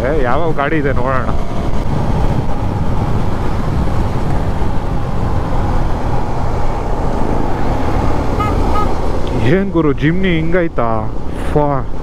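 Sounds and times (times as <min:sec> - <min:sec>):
road noise: 0:00.0 - 0:12.0
wind rushing: 0:00.8 - 0:09.4
motorcycle engine: 0:01.0 - 0:09.5.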